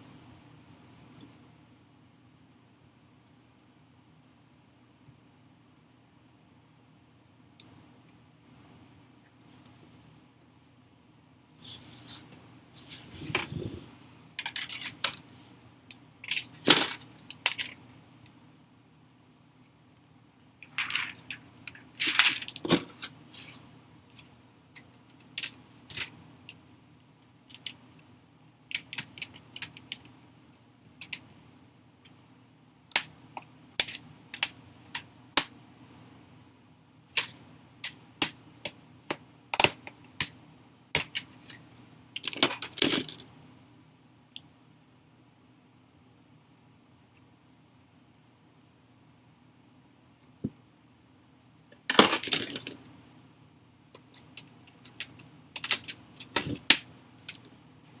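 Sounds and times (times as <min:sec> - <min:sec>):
faint low hum: 0:00.0 - 0:58.0
small parts clicking and clattering: 0:14.4 - 0:18.4, 0:20.6 - 0:28.1, 0:28.7 - 0:31.4, 0:32.9 - 0:35.5, 0:37.1 - 0:40.4, 0:41.0 - 0:43.4, 0:51.7 - 0:53.0, 0:53.9 - 0:57.6.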